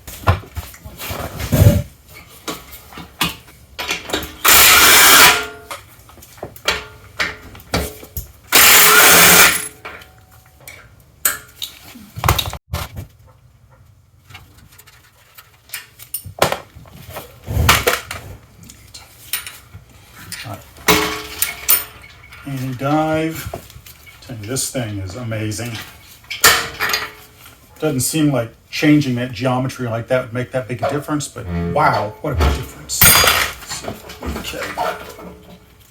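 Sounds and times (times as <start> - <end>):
impact wrench: 4.4 - 5.6, 8.5 - 9.8.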